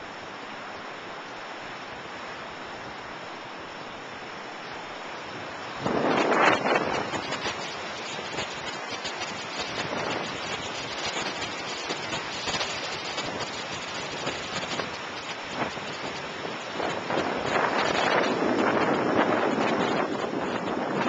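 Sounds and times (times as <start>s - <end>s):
lake waves washing onto beach: 0.0s - 21.0s
wind buffeting microphone: 5.2s - 21.0s.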